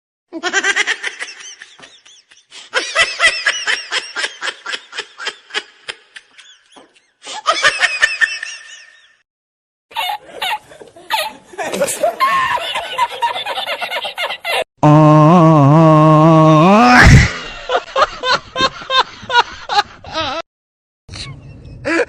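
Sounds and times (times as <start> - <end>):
person laughing: 9.9 - 20.4, 21.1 - 22.0.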